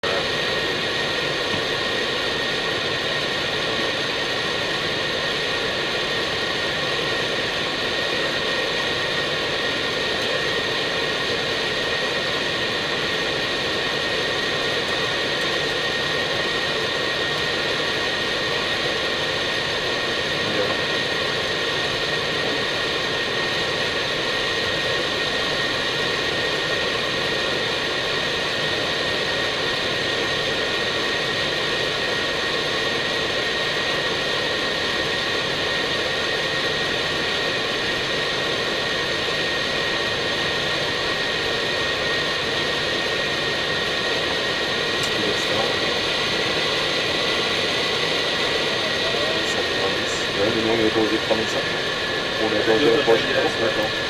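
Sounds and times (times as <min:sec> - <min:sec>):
airflow and jet engine rush: 0:00.0 - 0:54.0
high whine: 0:42.2 - 0:54.0.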